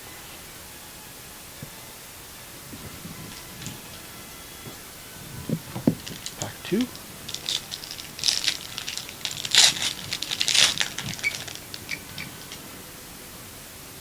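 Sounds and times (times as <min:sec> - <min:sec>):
foil wrapper tearing and crinkling: 0:05.6 - 0:12.7.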